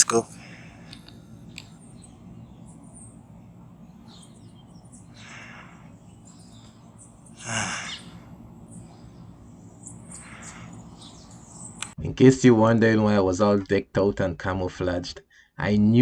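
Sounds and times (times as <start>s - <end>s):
birds chirping faintly: 0.0s - 12.0s
low outdoor rumble: 0.0s - 12.0s.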